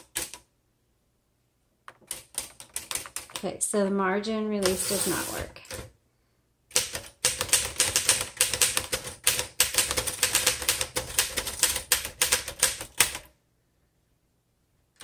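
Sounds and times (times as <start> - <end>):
manual typewriter typing: 0.0 - 0.5, 1.9 - 3.5, 4.6 - 5.9, 6.7 - 13.3.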